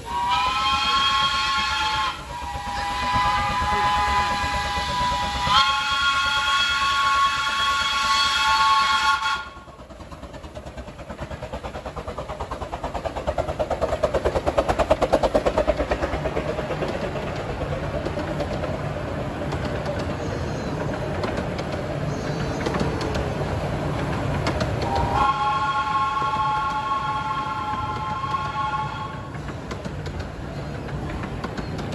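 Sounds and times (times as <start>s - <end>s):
steam locomotive whistle: 0.0s - 9.7s, 24.8s - 29.4s
steam locomotive exhaust beats: 0.0s - 31.9s.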